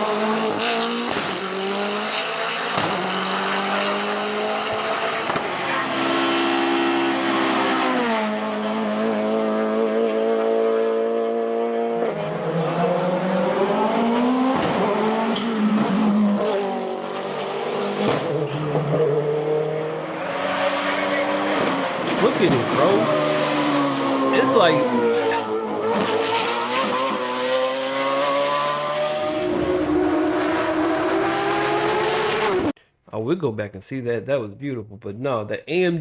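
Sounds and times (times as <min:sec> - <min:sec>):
race car engine at full throttle: 0:00.0 - 0:32.8.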